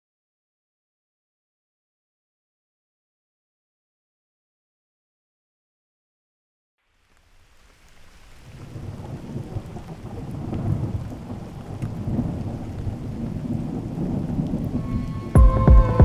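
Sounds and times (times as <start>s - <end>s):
rain falling: 6.8s - 16.0s
rolling thunder rumble: 8.5s - 16.0s.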